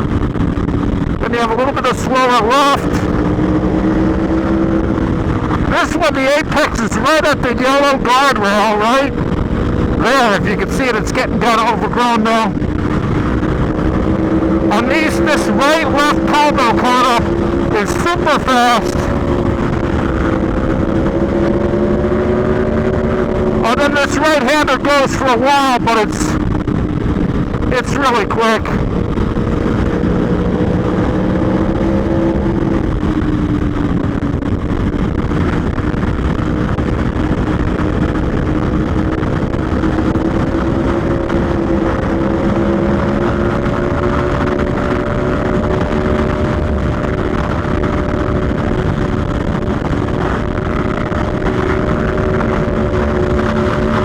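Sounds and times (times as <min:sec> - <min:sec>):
motorcycle engine at speed: 0:00.0 - 0:54.0
wind rushing: 0:00.0 - 0:54.0.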